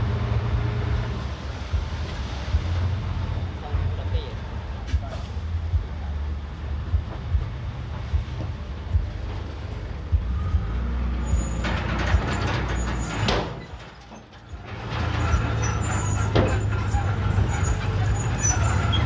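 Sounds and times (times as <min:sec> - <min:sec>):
heavy engine humming: 0:00.0 - 0:19.0.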